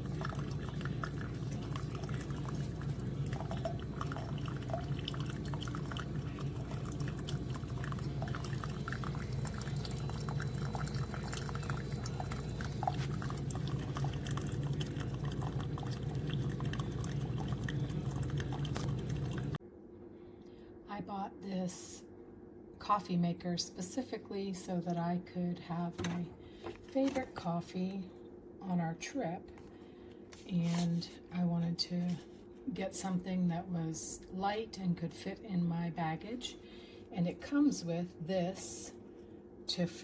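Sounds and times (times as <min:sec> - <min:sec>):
coffee dripping into cup: 0:00.0 - 0:19.6
coffee maker humming: 0:00.0 - 0:19.6.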